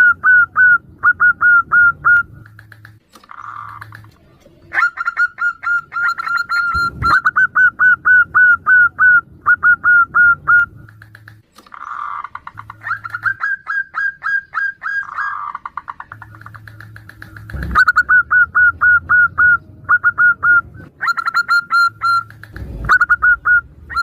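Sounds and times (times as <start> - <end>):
doves cooing: 0.0 - 24.0.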